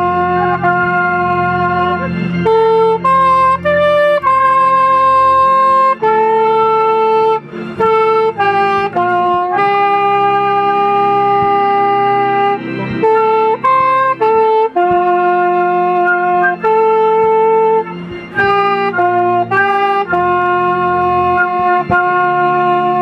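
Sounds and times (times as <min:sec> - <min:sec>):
low steady accompaniment: 0:00.0 - 0:23.0
melody of held notes: 0:00.0 - 0:23.0.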